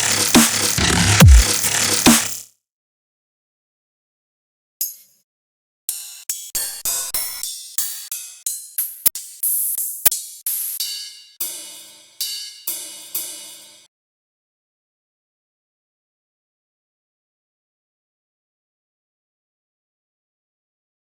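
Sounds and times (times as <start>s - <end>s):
electronic dubstep beat: 0.0s - 2.4s
sharp cymbal-like hits: 0.0s - 2.4s, 10.9s - 13.9s.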